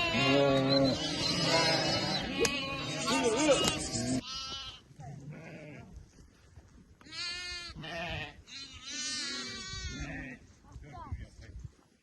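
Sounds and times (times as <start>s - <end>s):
sheep bleating: 0.0s - 5.9s, 7.1s - 10.4s.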